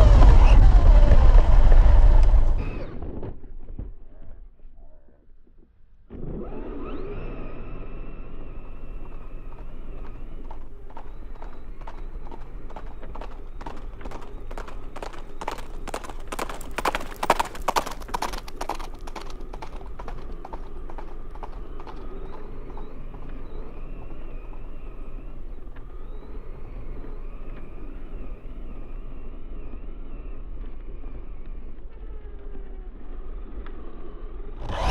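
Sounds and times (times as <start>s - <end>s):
electric motor whining: 6.1s - 11.4s, 34.6s - 34.9s.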